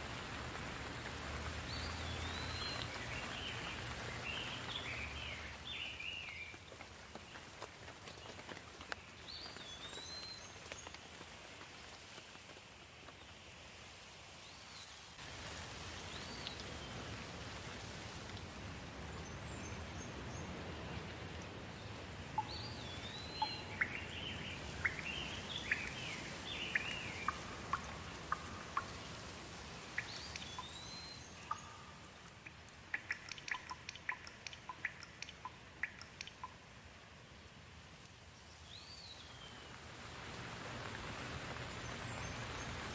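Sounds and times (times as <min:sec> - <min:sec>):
steady rain falling: 0:00.0 - 0:42.9
sharp ticks from drops: 0:31.5 - 0:36.6.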